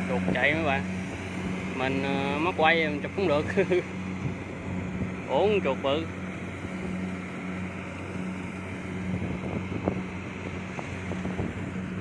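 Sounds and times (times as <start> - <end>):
diesel engine humming: 0.0 - 12.0
whirr of cutting machinery: 0.0 - 12.0.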